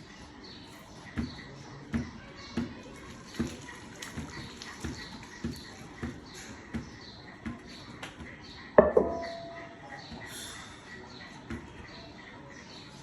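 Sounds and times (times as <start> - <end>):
dull knocks: 8.8 - 9.6.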